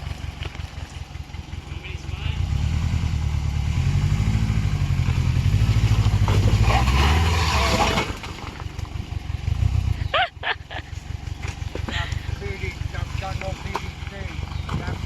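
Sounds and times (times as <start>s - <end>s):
car engine revving hard: 2.3s - 8.2s.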